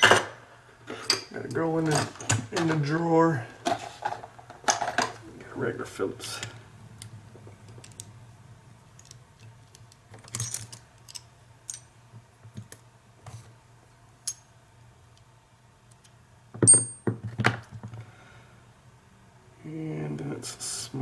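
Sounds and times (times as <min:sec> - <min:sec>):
metal tools clattering: 0:01.0 - 0:02.9
metal tools clinking in drawer: 0:01.0 - 0:02.9, 0:10.2 - 0:11.9.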